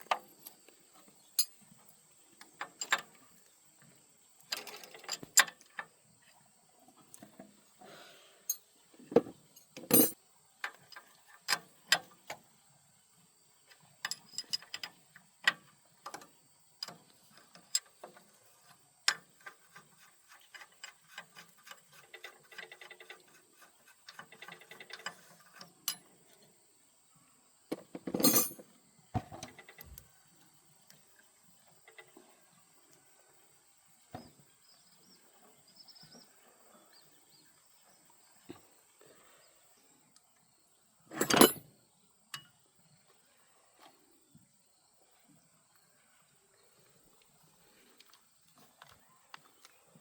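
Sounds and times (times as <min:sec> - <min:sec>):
hand tools clinking on metal: 0:09.6 - 0:10.2, 0:28.1 - 0:28.6, 0:41.1 - 0:41.7.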